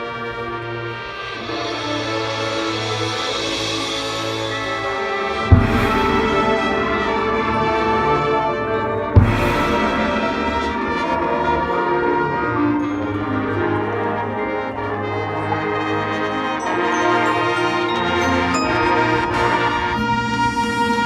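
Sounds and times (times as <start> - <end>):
marching band brass chords: 0.0 - 21.0.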